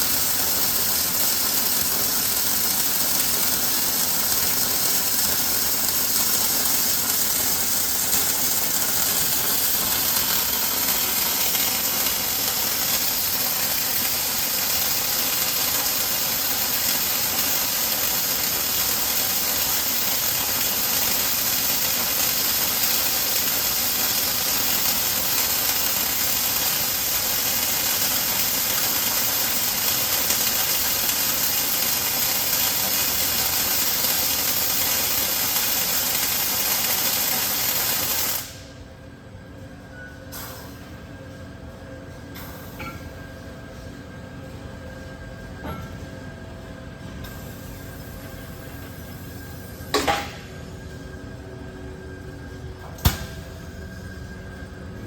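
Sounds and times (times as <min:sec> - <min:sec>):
machine running: 0:00.0 - 0:24.4
arc welding hiss: 0:00.0 - 0:38.7, 0:47.3 - 0:50.5.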